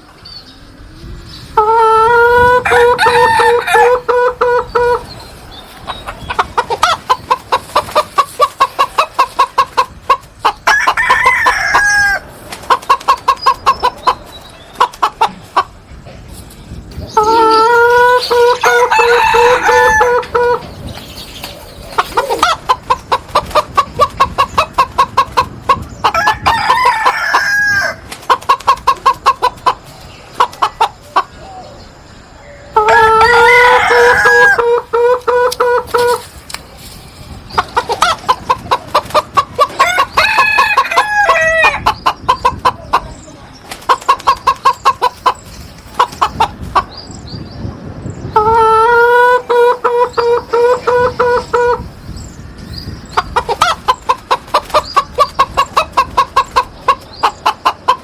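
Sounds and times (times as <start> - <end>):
chicken clucking rapidly: 1.5 - 52.0, 53.0 - 58.0
rooster crowing: 2.4 - 4.2, 10.7 - 12.3, 17.4 - 20.5, 26.1 - 28.0, 32.8 - 34.7, 39.8 - 41.8.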